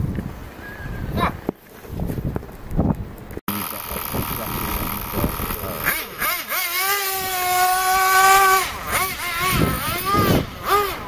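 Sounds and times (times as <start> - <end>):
small engine revving: 3.5 - 11.0.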